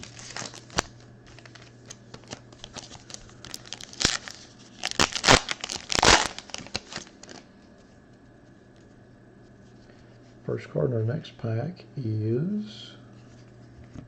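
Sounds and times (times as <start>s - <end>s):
foil wrapper tearing and crinkling: 0.0s - 7.5s.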